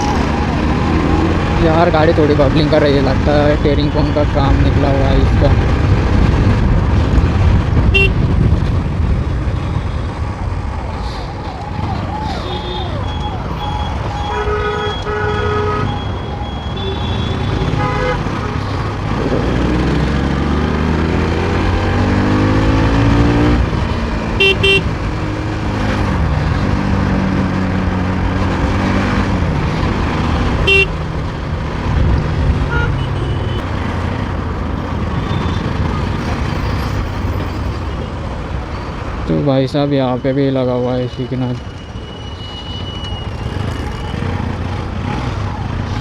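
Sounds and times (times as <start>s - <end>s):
motorcycle engine accelerating: 0.0s - 2.4s, 17.4s - 32.8s
wind noise: 4.6s - 12.4s
vehicle horns beeping: 7.9s - 8.2s, 12.4s - 18.8s, 23.3s - 26.7s, 30.6s - 31.0s, 32.7s - 33.6s, 41.3s - 44.5s.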